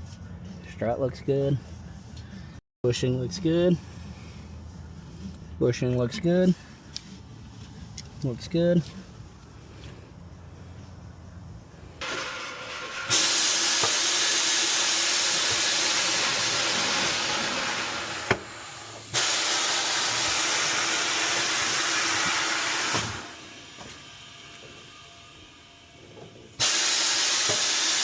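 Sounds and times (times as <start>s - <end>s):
pressurised spray hissing: 12.1s - 23.7s, 26.6s - 28.0s.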